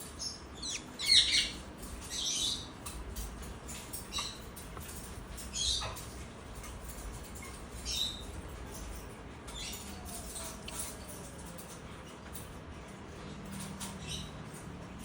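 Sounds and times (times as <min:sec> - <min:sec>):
parrots squawking and chirping: 0:00.0 - 0:12.2.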